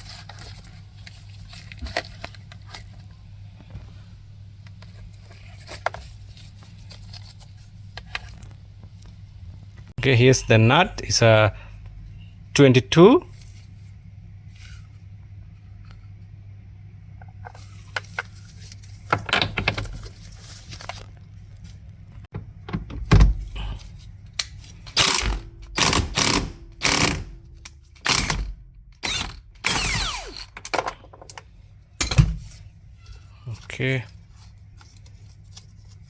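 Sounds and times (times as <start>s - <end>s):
socket ratchet clicking: 24.9s - 31.4s.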